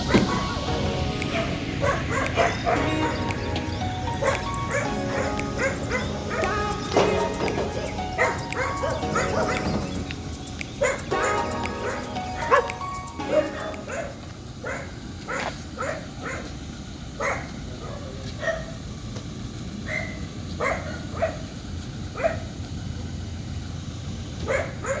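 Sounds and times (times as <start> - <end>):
dog barking: 1.3 - 3.5, 4.1 - 9.9, 10.8 - 16.6, 17.2 - 18.8, 19.9 - 21.5, 22.2 - 22.6, 24.4 - 25.0.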